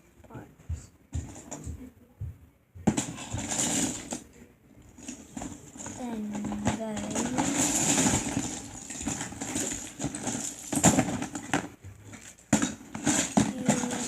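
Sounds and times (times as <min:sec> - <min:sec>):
plastic pieces clicking together: 0:05.0 - 0:14.0
plastic toy bricks rattling: 0:05.0 - 0:14.0.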